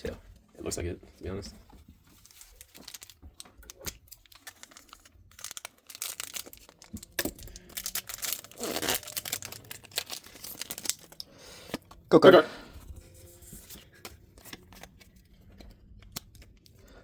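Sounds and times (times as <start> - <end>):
trading cards being handled: 1.6 - 12.0, 12.8 - 16.8
foil wrapper crinkling and tearing: 2.1 - 11.8.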